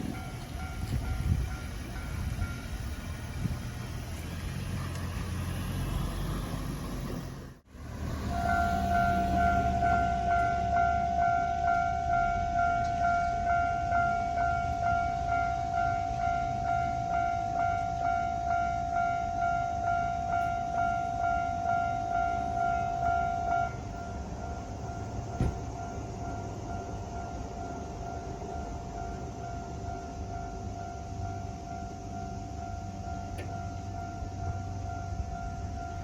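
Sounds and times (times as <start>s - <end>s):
level-crossing alarm dinging: 0.0s - 3.5s, 8.2s - 36.0s
faint steady tone: 8.2s - 36.0s.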